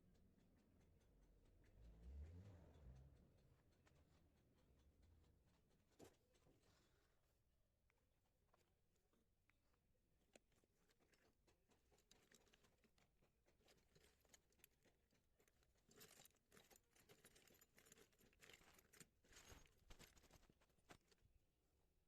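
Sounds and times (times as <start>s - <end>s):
rustling: 10.2s - 21.3s.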